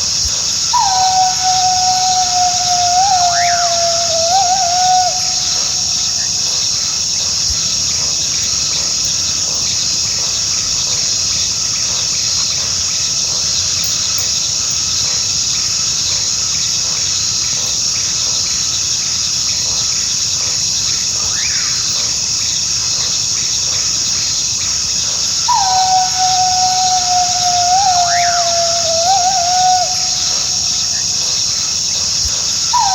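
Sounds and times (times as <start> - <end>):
crickets chirping: 0.0 - 32.9
coyote howling: 0.7 - 5.9, 25.4 - 30.8.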